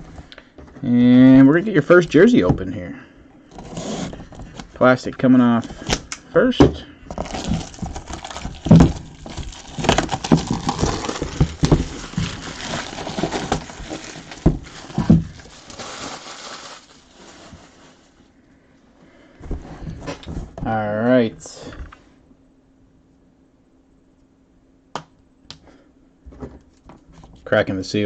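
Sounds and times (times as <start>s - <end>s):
plastic shrink wrap crinkling: 7.1s - 18.2s.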